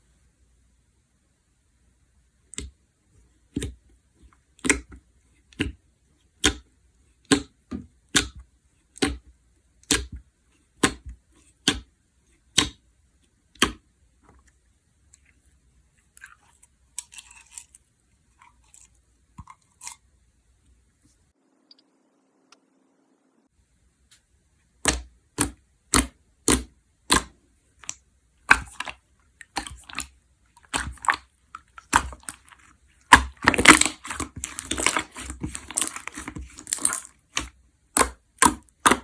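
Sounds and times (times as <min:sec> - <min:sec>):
sharp wet pops: 0:24.8 - 0:39.0
slime squished by hand: 0:24.8 - 0:39.0.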